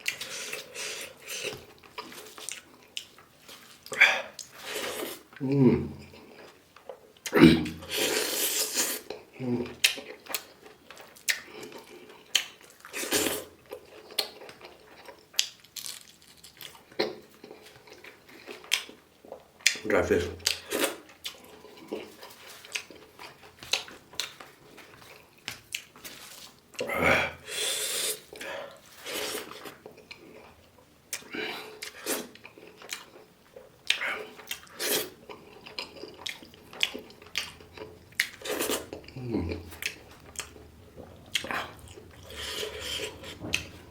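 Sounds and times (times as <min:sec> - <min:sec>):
chewing and mouth smacks: 0:00.0 - 0:05.4, 0:06.1 - 0:19.8, 0:20.4 - 0:26.9, 0:28.2 - 0:43.9
tableware scraping: 0:42.2 - 0:43.9.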